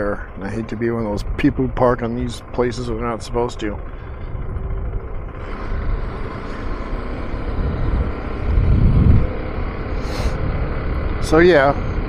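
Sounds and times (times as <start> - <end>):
motorcycle engine running: 0.0 - 12.0
low rumble: 0.2 - 12.0
wind rumble on microphone: 4.0 - 11.2.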